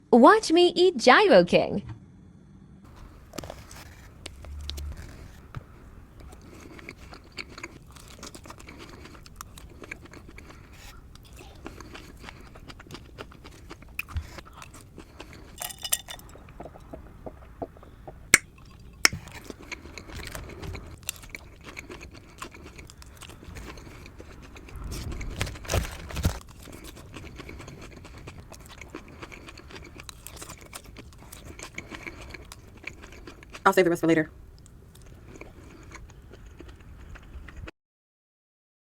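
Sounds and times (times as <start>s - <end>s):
chewing and biting food: 2.9s - 33.7s, 34.5s - 37.7s
wet mouth clicks: 16.4s - 19.2s.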